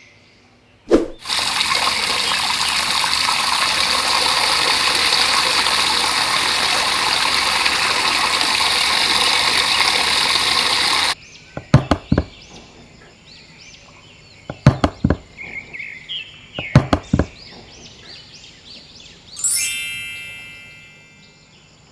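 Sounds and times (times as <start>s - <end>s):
water gushing: 0.9s - 11.2s
faint chirping calls: 5.1s - 21.9s
sharp knocks: 11.6s - 12.4s, 14.5s - 15.6s, 16.6s - 17.9s.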